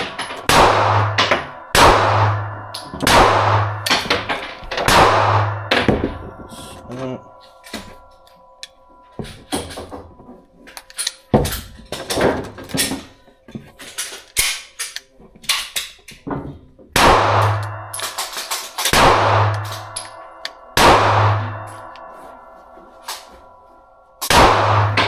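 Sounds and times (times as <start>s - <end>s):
gunshots: 0.0s - 6.2s, 17.0s - 17.6s, 18.9s - 19.8s, 20.8s - 21.6s, 24.2s - 25.0s
heavy gun booms with ringing tail: 0.0s - 6.8s, 17.0s - 18.0s, 18.9s - 21.8s, 24.3s - 25.0s.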